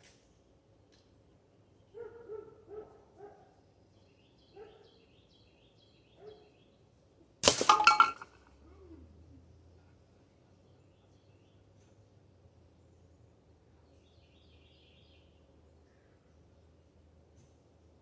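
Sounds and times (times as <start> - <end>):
air rifle shot: 7.4 - 8.1.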